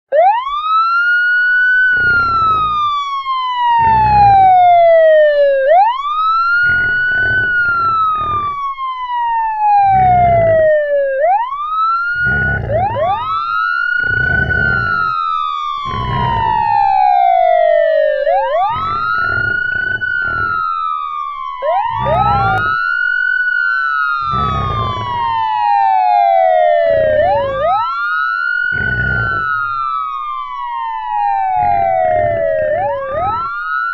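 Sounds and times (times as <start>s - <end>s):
police siren wailing: 0.1s - 33.9s
pig grunts: 1.9s - 2.9s, 3.8s - 5.0s, 6.6s - 8.6s, 9.8s - 10.8s, 12.2s - 15.2s, 15.9s - 17.1s, 18.3s - 20.7s, 21.7s - 22.8s, 24.2s - 25.6s, 26.8s - 27.8s, 28.7s - 29.7s, 31.6s - 33.6s.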